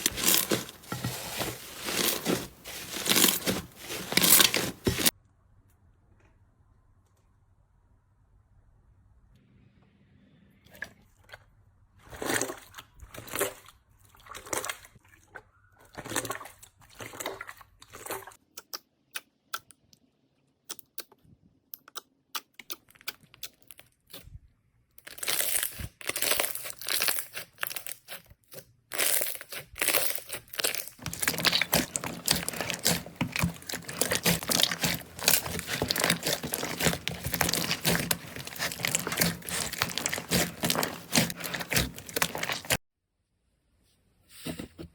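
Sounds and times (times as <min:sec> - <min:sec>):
slime squishing: 0:00.0 - 0:05.1, 0:25.0 - 0:42.8
slime crackling and popping: 0:25.0 - 0:28.2, 0:28.9 - 0:42.8.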